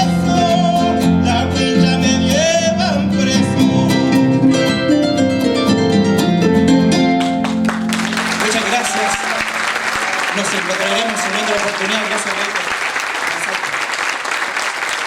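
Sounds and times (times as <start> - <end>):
person singing: 0.0 - 4.2
harp plucked notes: 3.7 - 7.9.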